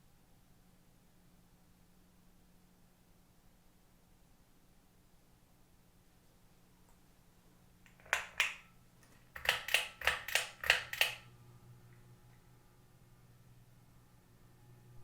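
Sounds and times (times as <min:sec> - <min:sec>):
faint low hum: 0:00.0 - 0:15.0
sharp clicks: 0:09.4 - 0:11.2.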